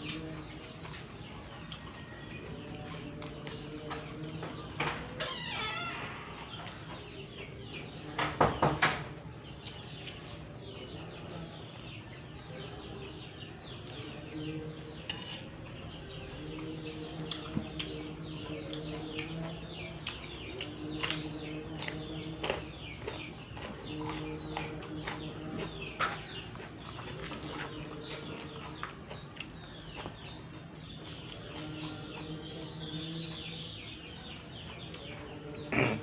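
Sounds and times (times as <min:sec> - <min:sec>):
plate and utensils clattering: 0:15.1 - 0:15.5.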